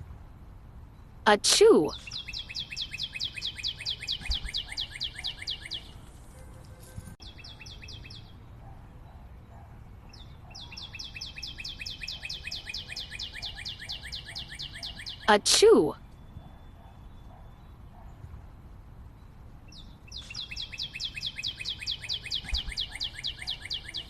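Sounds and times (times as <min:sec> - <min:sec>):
bird trilling: 0:01.9 - 0:06.0, 0:10.5 - 0:15.4, 0:20.1 - 0:24.0.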